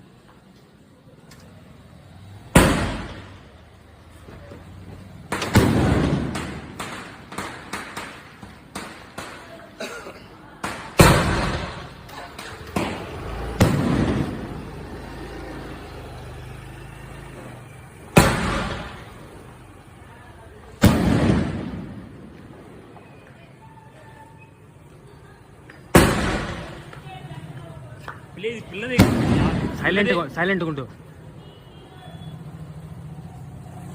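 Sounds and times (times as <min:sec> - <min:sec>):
fireworks booms with echo: 0:02.5 - 0:03.5, 0:05.2 - 0:09.7, 0:10.6 - 0:14.8, 0:18.0 - 0:19.5, 0:20.7 - 0:23.0, 0:25.9 - 0:27.1, 0:28.8 - 0:30.3
fireworks bangs: 0:02.5 - 0:03.8, 0:04.4 - 0:09.8, 0:10.4 - 0:16.2, 0:17.1 - 0:24.4, 0:25.8 - 0:27.6, 0:28.2 - 0:33.0.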